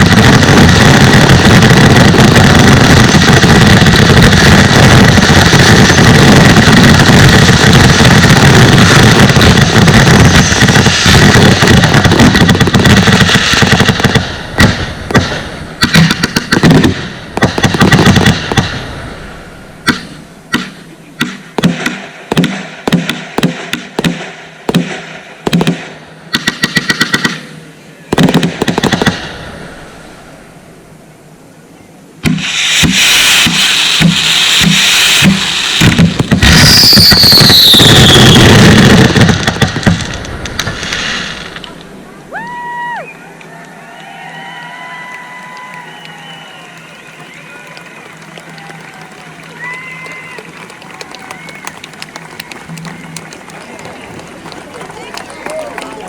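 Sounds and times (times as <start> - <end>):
fireworks bangs and crackle: 0.0 - 31.0, 32.2 - 43.0, 44.4 - 56.0.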